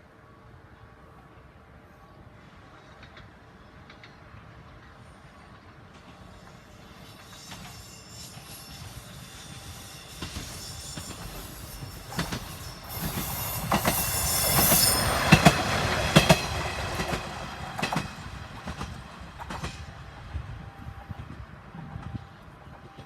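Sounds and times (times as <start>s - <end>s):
diesel railcar passing: 0.0s - 23.0s
wheels clicking over rail joints: 10.2s - 19.9s.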